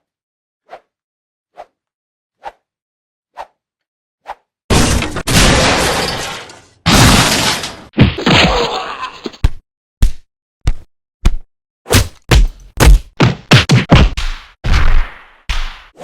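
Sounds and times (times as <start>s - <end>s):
crashing impacts: 4.7s - 8.3s.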